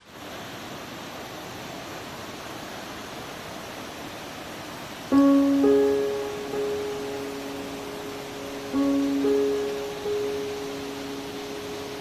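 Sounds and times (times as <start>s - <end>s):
flowing water: 0.0s - 12.0s
ringing musical notes: 5.1s - 12.0s.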